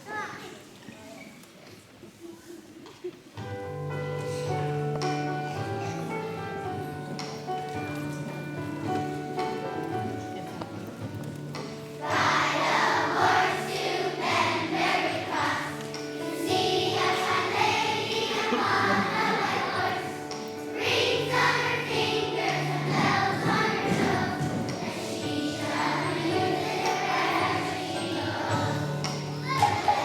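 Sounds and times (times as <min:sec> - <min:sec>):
instrumental accompaniment: 0:03.4 - 0:30.0
children's choir singing: 0:11.5 - 0:30.0.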